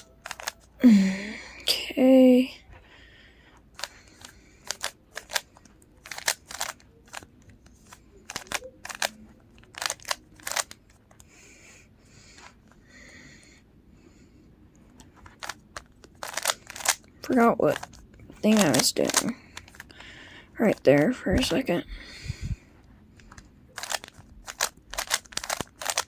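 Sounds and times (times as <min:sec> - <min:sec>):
puzzle cube clicking and clacking: 0:00.0 - 0:01.7, 0:03.7 - 0:11.3, 0:14.9 - 0:20.0, 0:20.6 - 0:21.8, 0:23.2 - 0:26.0.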